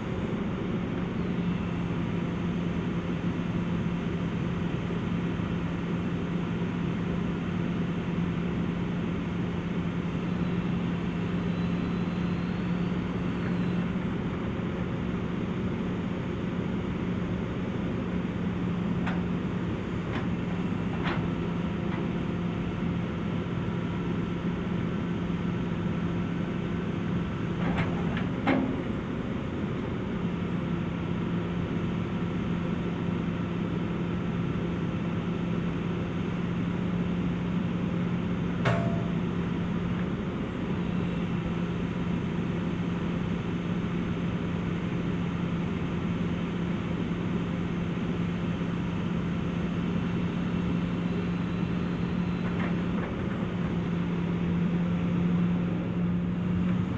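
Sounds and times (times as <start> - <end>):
excavator diesel engine running: 0.0 - 56.9
sharp knocks from machine: 38.6 - 39.3.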